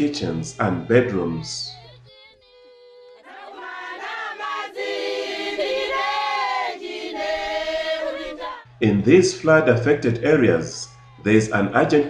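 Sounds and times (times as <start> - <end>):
group singing in chorus: 3.0 - 10.2.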